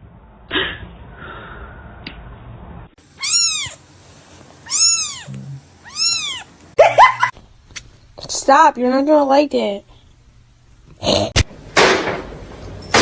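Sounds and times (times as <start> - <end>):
cat meowing: 3.2 - 3.8, 4.6 - 6.5.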